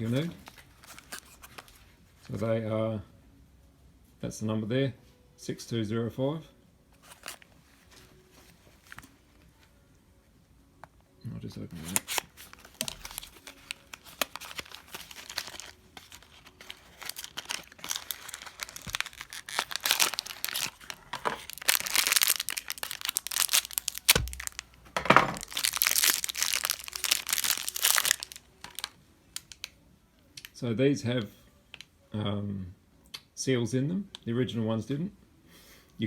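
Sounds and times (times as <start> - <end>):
packaging crinkling: 0.0 - 1.9, 7.0 - 9.2, 11.8 - 29.7.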